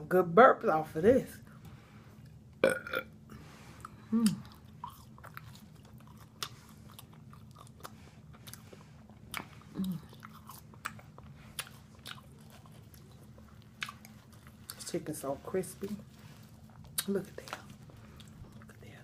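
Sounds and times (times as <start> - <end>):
chewing crispy fried chicken: 3.8 - 19.0.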